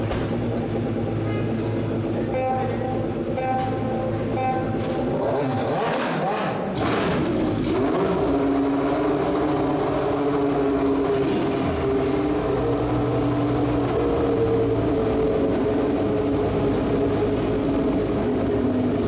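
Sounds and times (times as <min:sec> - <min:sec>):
racing car engine accelerating: 0:00.0 - 0:19.0.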